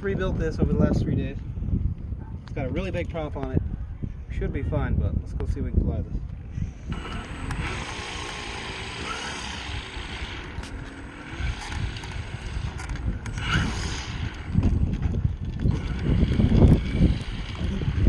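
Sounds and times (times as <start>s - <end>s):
wind buffeting microphone: 0.0s - 18.0s
steady outdoor hiss: 6.7s - 14.6s.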